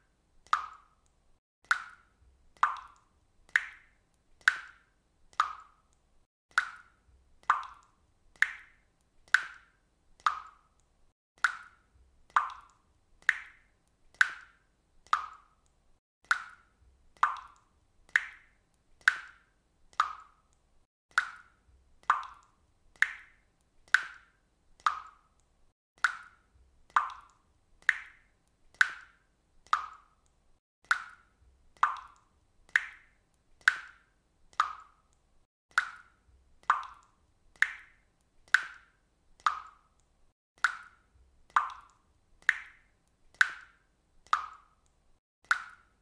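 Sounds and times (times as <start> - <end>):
water drops plopping: 0.5 - 1.0, 1.6 - 5.8, 6.5 - 10.7, 11.4 - 15.6, 16.2 - 25.3, 26.0 - 39.9, 40.6 - 44.8.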